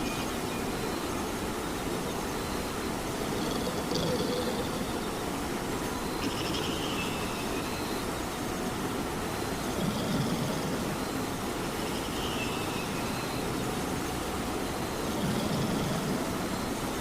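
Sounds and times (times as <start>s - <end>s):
steady rain: 0.0s - 17.0s
cat snoring: 3.2s - 4.8s, 9.7s - 10.8s, 15.1s - 16.2s.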